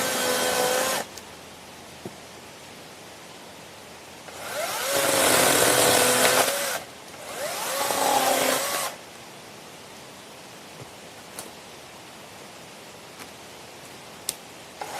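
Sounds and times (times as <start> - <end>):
cordless chainsaw motor revving: 0.0 - 1.1, 4.3 - 9.0.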